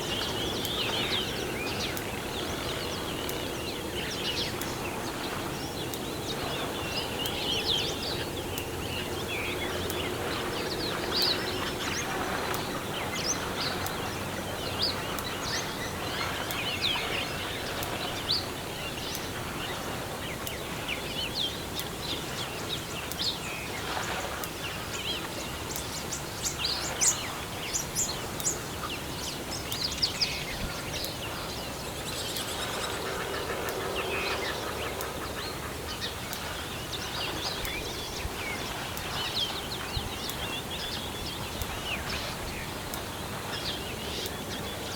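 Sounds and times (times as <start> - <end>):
birds chirping and calling: 25.1 - 44.9.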